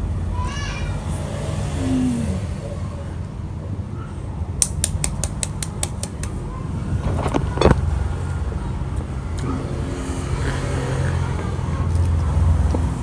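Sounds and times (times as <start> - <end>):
rapid sharp clicks: 4.6 - 6.4.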